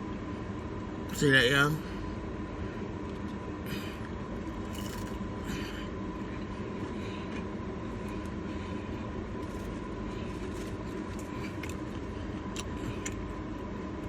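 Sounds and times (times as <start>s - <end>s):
low rumble and hum: 0.0s - 14.0s
eating and paper crinkling: 3.0s - 13.7s.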